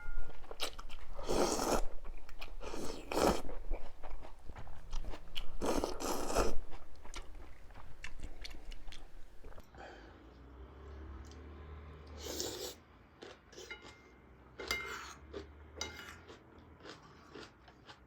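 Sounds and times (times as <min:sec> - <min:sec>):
chewing: 0:00.0 - 0:09.7, 0:12.3 - 0:14.0, 0:16.3 - 0:18.0
slurping: 0:00.5 - 0:09.7, 0:12.2 - 0:12.8.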